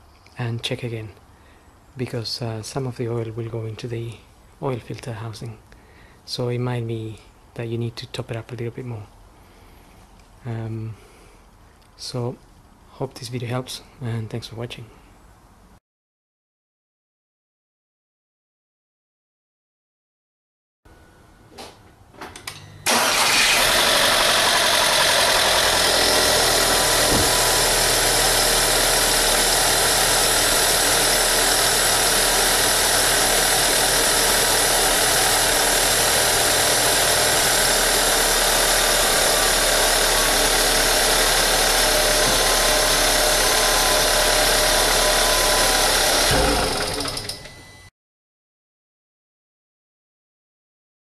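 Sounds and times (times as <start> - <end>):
car engine starting and idling: 22.8 - 47.7.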